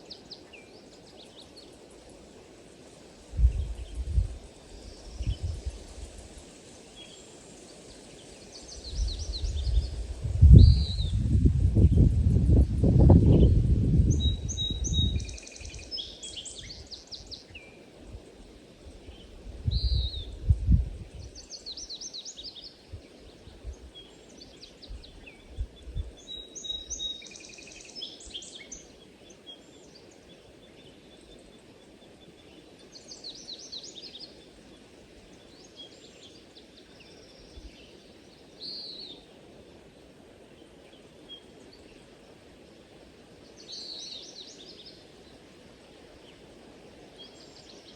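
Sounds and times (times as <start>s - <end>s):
steady background hiss: 0.0s - 47.9s
small birds chirping: 3.3s - 39.3s, 43.4s - 47.9s.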